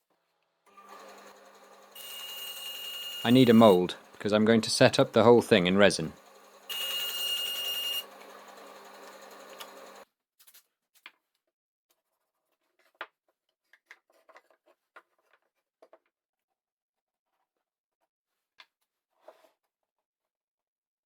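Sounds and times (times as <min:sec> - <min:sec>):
small power tool motor running: 0:00.7 - 0:10.0.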